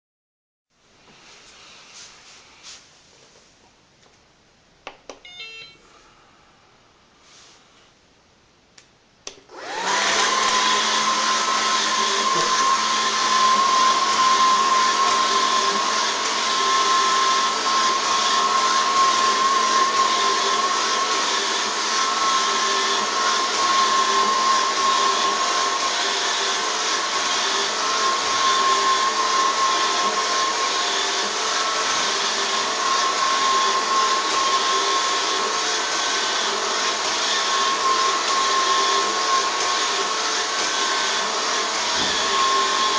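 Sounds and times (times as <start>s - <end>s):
robot vacuum running: 9.5s - 42.9s.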